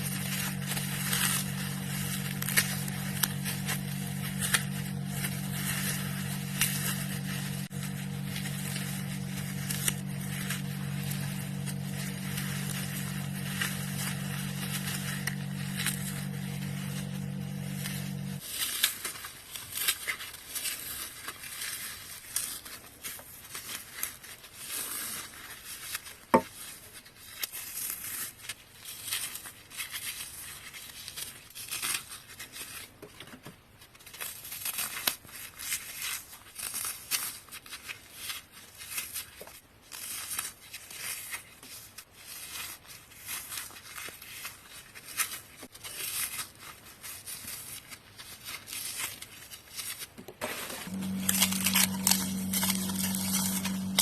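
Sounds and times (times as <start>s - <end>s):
floral foam crunching: 0.0s - 26.0s, 42.2s - 54.0s.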